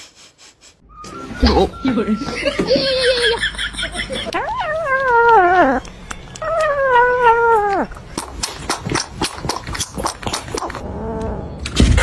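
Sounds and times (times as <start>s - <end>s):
kitten meowing: 4.4s - 7.9s.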